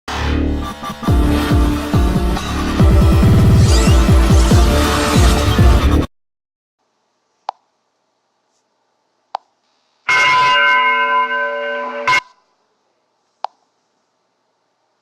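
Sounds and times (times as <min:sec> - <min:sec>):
electronic dance music: 0:00.1 - 0:06.1.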